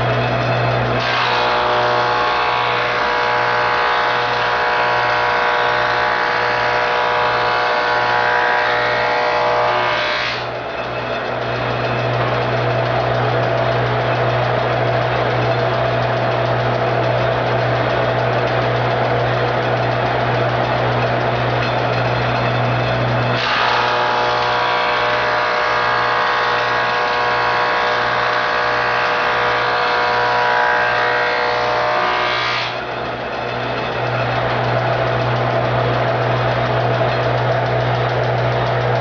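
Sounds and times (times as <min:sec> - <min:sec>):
high whine of wood cutting: 0:00.0 - 0:39.0
planer machine running: 0:00.0 - 0:39.0
drive belt clicking: 0:10.4 - 0:23.6, 0:32.7 - 0:39.0.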